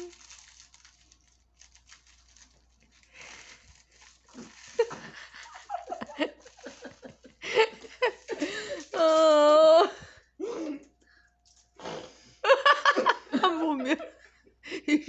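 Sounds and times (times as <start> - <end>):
biscuits crunching while chewing: 0.0 - 9.0.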